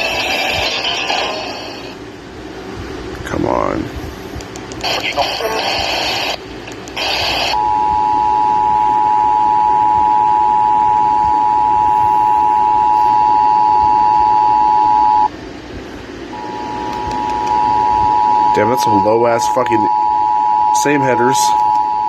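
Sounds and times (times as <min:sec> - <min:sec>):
screechy data burst: 0:00.0 - 0:02.0, 0:04.8 - 0:07.6
faint radio hiss: 0:04.8 - 0:07.6.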